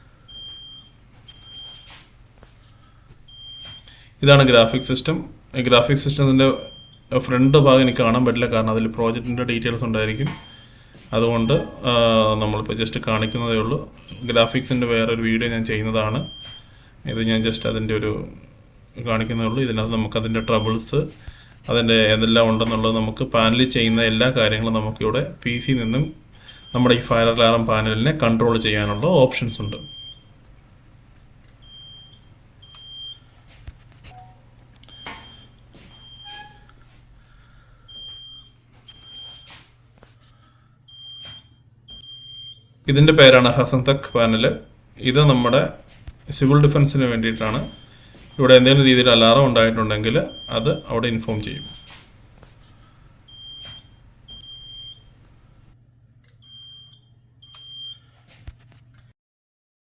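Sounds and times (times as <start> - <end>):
low electrical hum: 0.0 - 59.1
electronic alarm beeps: 0.3 - 2.0, 3.3 - 3.9, 6.5 - 8.0, 10.2 - 12.0, 13.2 - 14.8, 16.1 - 17.8, 19.2 - 20.9, 25.7 - 27.0, 28.8 - 30.3, 31.6 - 33.3, 34.1 - 36.7, 37.9 - 39.6, 40.9 - 42.8, 44.0 - 45.4, 47.4 - 49.4, 50.2 - 52.0, 53.3 - 55.1, 56.4 - 58.1
high-pitched alarm beeps: 0.3 - 2.0, 3.3 - 3.9, 10.2 - 12.0, 34.1 - 36.6, 37.9 - 39.5, 40.9 - 42.7, 50.2 - 52.0, 53.3 - 55.1.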